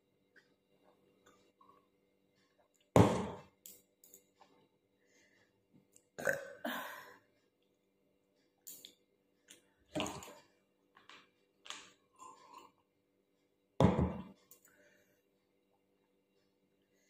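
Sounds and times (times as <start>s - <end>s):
woman burping: 6.2s - 7.2s.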